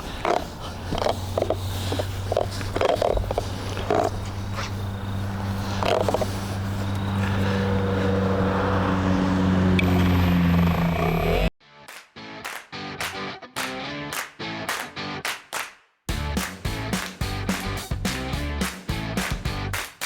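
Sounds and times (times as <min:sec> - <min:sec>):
car buffer motor hum: 0:00.0 - 0:11.5.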